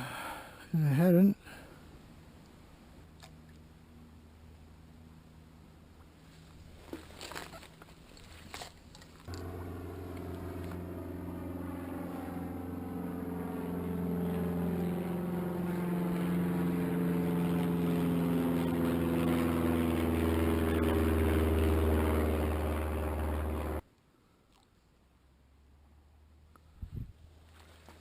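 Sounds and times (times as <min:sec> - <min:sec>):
engine drone: 0:02.8 - 0:23.8.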